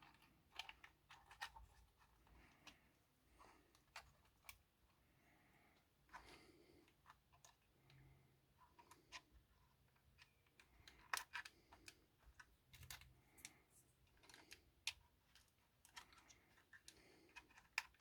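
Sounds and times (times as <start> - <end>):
plastic parts clicking and tapping: 9.9 - 18.0.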